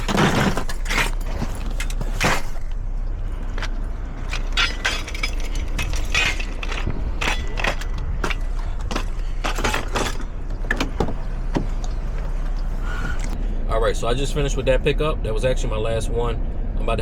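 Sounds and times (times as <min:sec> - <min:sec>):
handling clicks and rustles: 0:00.0 - 0:13.4
low steady hum: 0:00.0 - 0:17.0.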